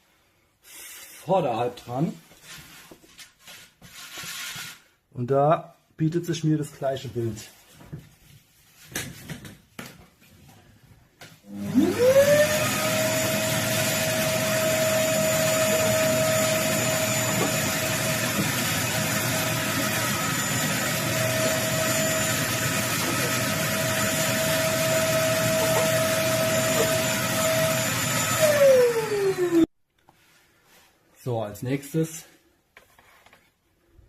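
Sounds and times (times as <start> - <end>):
vacuum cleaner whining: 11.4 - 29.7.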